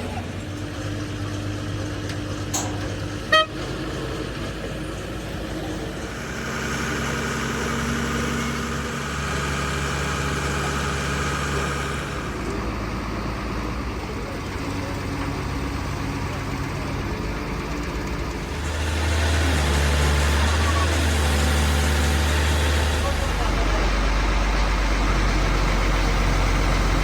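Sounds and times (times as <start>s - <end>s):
engine running: 0.0s - 27.0s
short horn toot: 3.2s - 3.8s.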